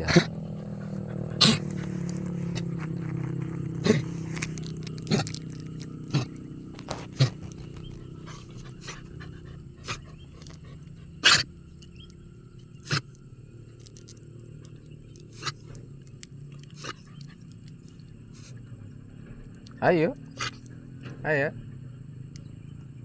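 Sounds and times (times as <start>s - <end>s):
animal coughing: 0.0s - 12.1s, 12.7s - 13.2s, 15.2s - 15.9s, 16.6s - 18.8s, 20.2s - 21.3s
low background hum: 0.0s - 23.0s.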